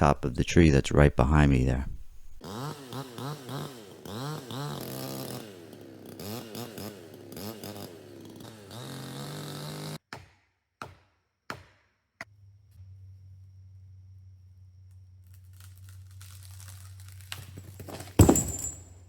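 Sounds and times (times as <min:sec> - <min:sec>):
chainsaw cutting: 0:02.4 - 0:10.0.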